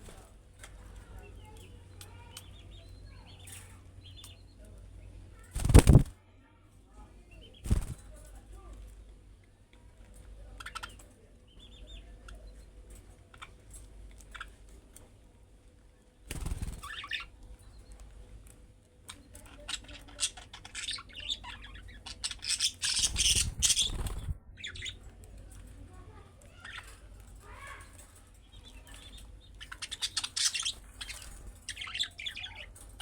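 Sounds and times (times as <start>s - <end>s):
budgerigars chirping: 19.7s - 25.0s, 29.0s - 32.7s.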